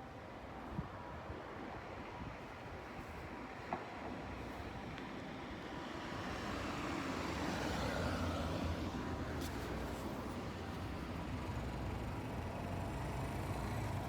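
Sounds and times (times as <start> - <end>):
bus diesel engine: 9.9 - 14.0.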